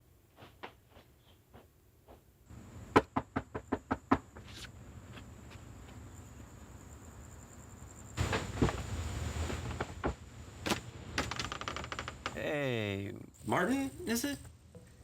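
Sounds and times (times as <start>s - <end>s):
steady background hum: 0.3s - 15.0s
knocking on a door: 2.9s - 4.4s
faint high whine: 12.3s - 15.0s.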